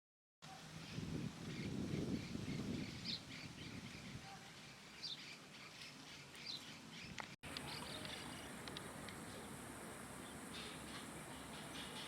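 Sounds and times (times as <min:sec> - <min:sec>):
outdoor background noise: 0:00.4 - 0:12.0
faint bird chirps: 0:10.2 - 0:12.0.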